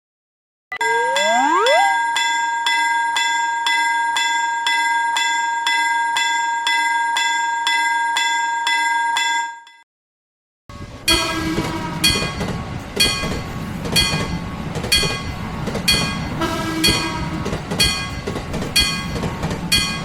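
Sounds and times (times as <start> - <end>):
railroad crossing bell ringing: 2.0 - 9.7, 15.0 - 20.0
train: 2.5 - 9.4, 10.7 - 20.0.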